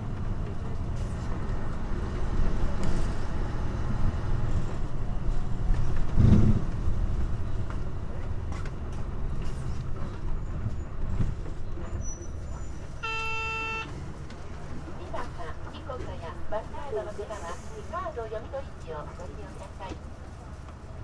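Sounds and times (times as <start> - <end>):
bus engine revving hard: 6.1 - 6.9.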